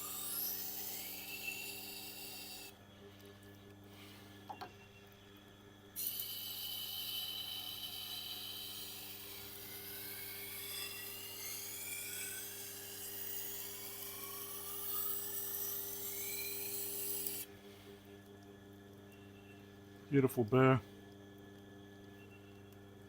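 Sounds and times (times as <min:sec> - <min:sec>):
grinding wheel rasping on knife: 0:00.0 - 0:02.7, 0:06.0 - 0:17.5
motor hum: 0:00.0 - 0:23.0.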